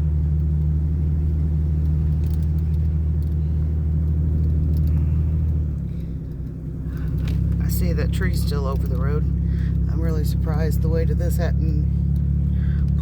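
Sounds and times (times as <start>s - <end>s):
truck engine hum inside cab: 0.0s - 13.0s
faint ticks: 1.8s - 7.6s.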